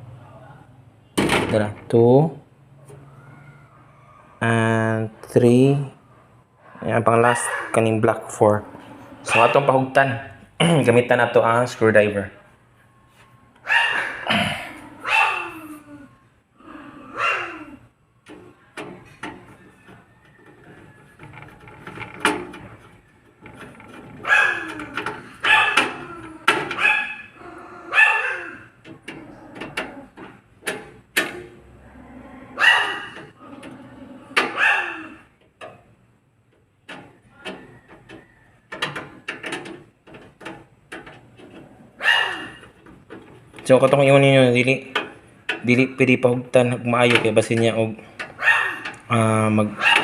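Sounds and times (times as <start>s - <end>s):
loud animal calls: 8.5s - 9.8s, 13.6s - 18.0s, 24.1s - 30.2s, 31.6s - 35.4s, 41.7s - 42.8s, 48.4s - 50.0s.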